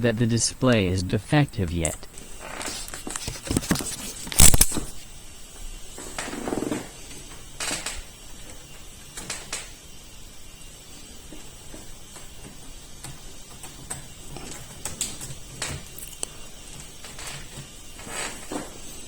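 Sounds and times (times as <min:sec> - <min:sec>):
objects clicking and knocking: 0:15.7 - 0:16.3.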